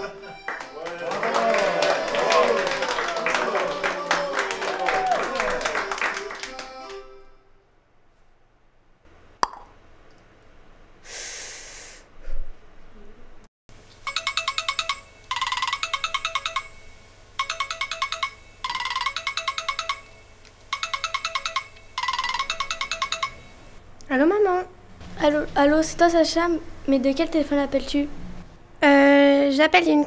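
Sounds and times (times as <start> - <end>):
short hiss: 11.0 - 12.1
telephone ringing: 14.0 - 23.8.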